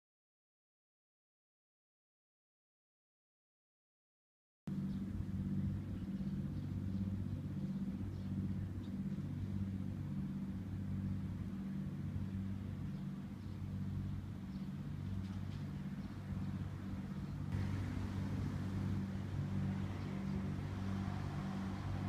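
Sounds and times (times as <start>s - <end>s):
low rumble: 16.1s - 22.0s.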